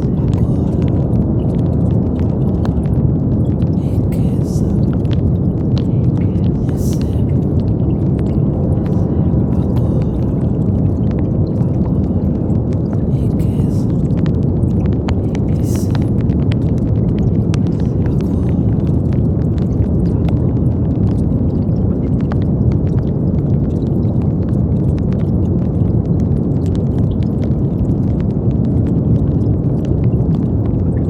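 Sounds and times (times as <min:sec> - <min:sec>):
deep rumbling brown noise: 0:00.0 - 0:31.0.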